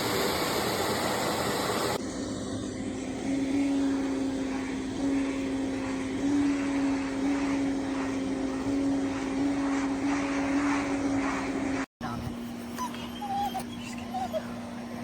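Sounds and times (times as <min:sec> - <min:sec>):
vacuum motor hum: 0:00.0 - 0:15.0
rushing air: 0:03.1 - 0:11.9.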